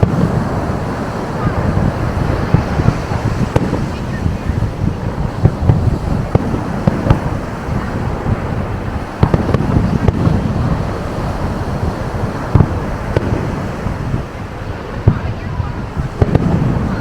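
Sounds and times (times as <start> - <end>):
fireworks bangs: 0.0 - 17.0
wind rumble on microphone: 0.0 - 17.0.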